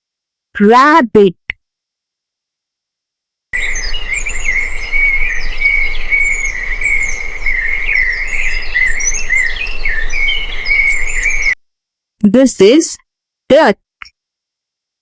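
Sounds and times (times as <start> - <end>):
insects trilling: 3.6 - 11.6
small birds chirping: 3.6 - 11.6.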